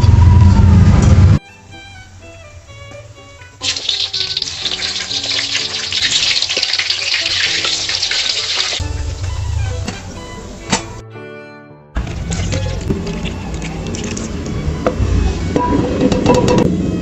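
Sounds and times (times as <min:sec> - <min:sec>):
background music: 0:01.4 - 0:17.0
water running from kitchen tap: 0:03.6 - 0:08.8.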